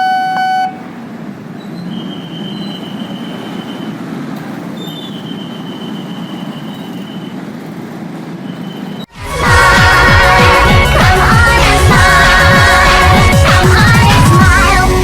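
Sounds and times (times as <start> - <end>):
electric train rumbling on rails: 0.0 - 15.0
train high whine: 0.0 - 15.0
loud pop music: 9.1 - 15.0.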